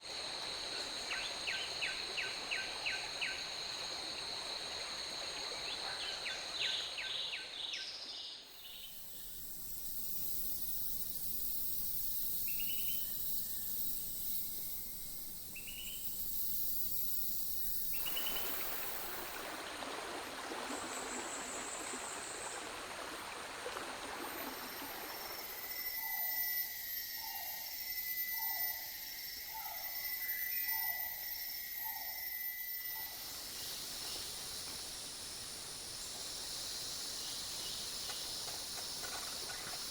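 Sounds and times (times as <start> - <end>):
cicadas: 0.0 - 39.9
insect drone: 0.0 - 39.9
river babbling: 18.1 - 25.9.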